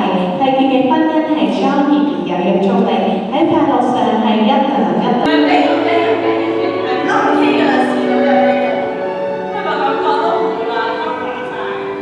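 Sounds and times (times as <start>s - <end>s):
operatic singing with accompaniment: 5.3s - 12.0s.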